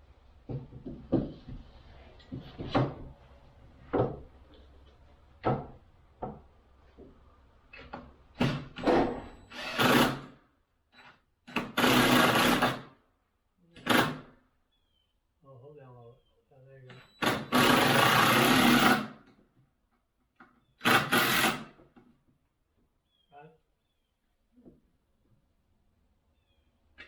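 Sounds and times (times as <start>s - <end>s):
knocks on wood: 0.5s - 1.7s, 3.9s - 4.3s
power drill driving screws: 8.4s - 10.4s, 11.0s - 12.9s, 13.8s - 14.3s, 16.9s - 19.2s, 20.8s - 21.8s.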